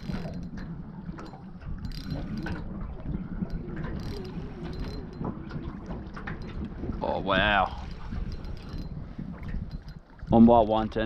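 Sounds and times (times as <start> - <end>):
fishing reel clicking: 0.0 - 2.7, 3.4 - 5.3, 7.8 - 9.0.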